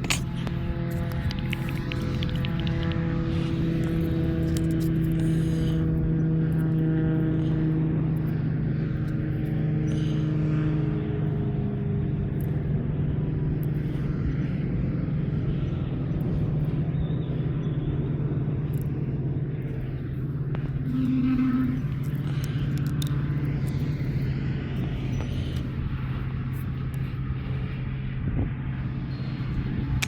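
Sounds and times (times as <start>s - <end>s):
engine humming: 0.0s - 30.0s
brief high tone: 20.8s - 22.1s.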